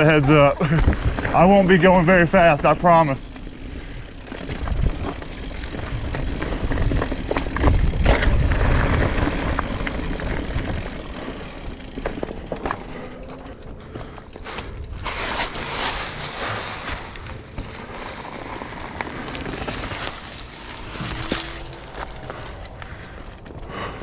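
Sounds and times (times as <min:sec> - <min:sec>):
bike clicks and rattles: 0:00.0 - 0:24.0
bike tyres rolling over rock: 0:00.0 - 0:24.0
wind rumble on microphone: 0:00.6 - 0:01.4, 0:04.0 - 0:11.1.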